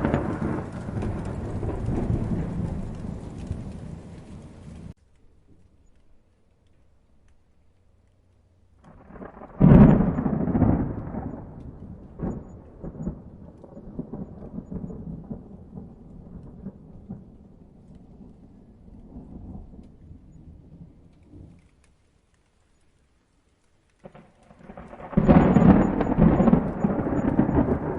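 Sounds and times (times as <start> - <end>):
thunder cracking and rumbling: 0.0 - 5.0, 8.8 - 21.9, 24.0 - 27.9.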